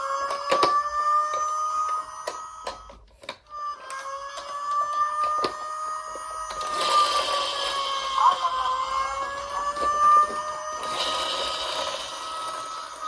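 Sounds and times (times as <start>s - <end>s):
toy electronic siren: 0.0s - 13.0s
plastic toy clicks and knocks: 0.1s - 5.7s.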